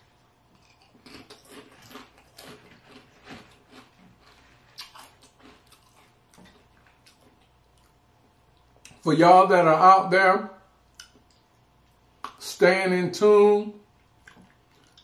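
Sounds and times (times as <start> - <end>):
person chewing food: 0.3 - 9.0, 10.8 - 12.4, 14.0 - 15.0.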